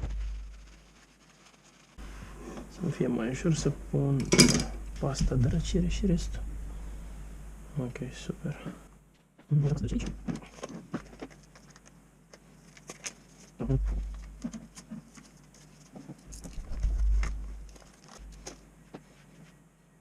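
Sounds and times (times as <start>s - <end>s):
microphone bump rumble: 4.7s - 7.5s, 16.4s - 17.7s.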